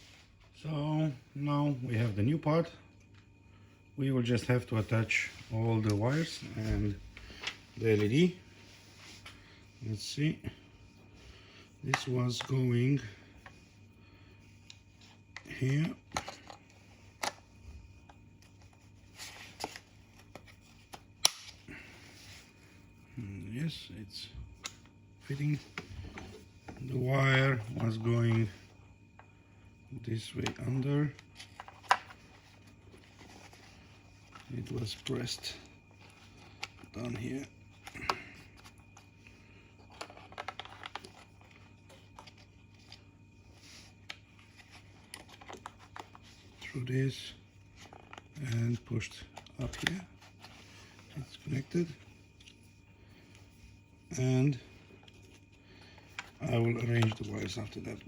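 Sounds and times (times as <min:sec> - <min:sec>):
steady low hum: 0:00.0 - 0:58.0
small clicks and rustles: 0:35.8 - 0:46.6
plastic parts rustling: 0:39.8 - 0:43.0
plastic parts clicking: 0:39.9 - 0:41.2.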